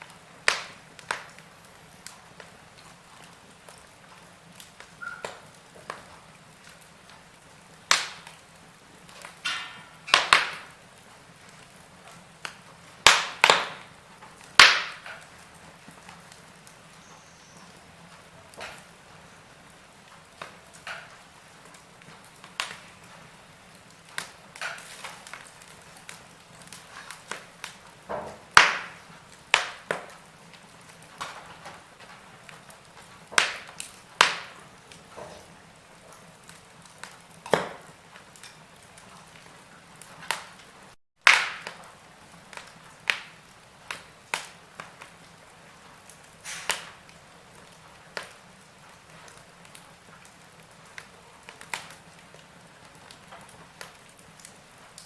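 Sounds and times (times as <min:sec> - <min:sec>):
faint steady hiss: 0:00.0 - 0:41.0
wood fire crackling and popping: 0:00.0 - 0:55.0.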